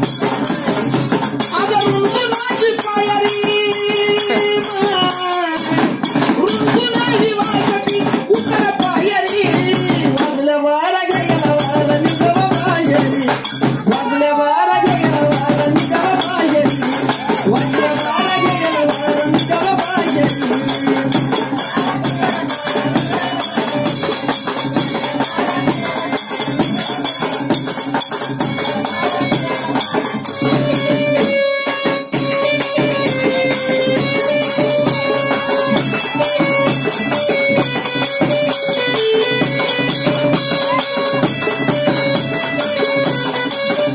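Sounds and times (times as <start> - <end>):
jingling hand percussion: 0.0 - 43.9
person singing folk song: 1.4 - 27.0
sustained instrumental melody: 15.2 - 43.9.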